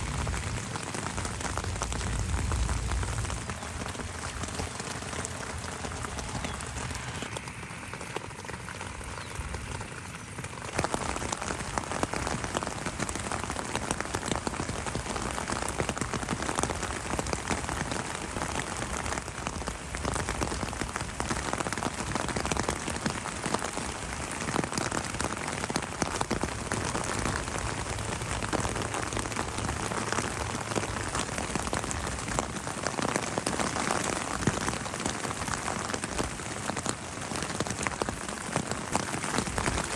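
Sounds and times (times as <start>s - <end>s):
rain pattering on surfaces: 0.0s - 39.9s.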